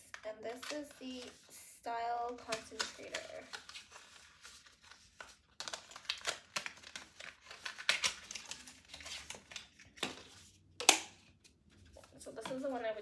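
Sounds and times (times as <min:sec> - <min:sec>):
packaging crinkling: 0:00.1 - 0:01.5, 0:02.3 - 0:13.0.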